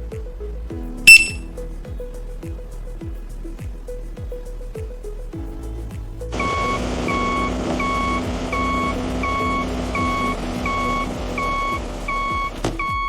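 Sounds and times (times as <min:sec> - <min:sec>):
reversing alarm beeping: 0:01.1 - 0:01.4, 0:06.4 - 0:13.0
diesel engine rumble: 0:05.6 - 0:13.0.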